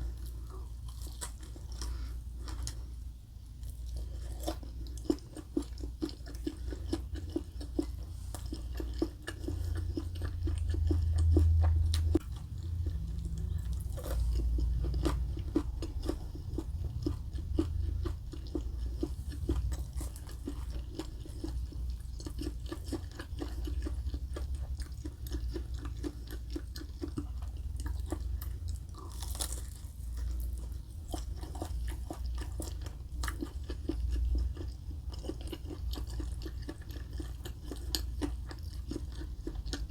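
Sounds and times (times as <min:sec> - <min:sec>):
person chewing food: 0:00.0 - 0:39.9
small crunches: 0:28.9 - 0:30.8.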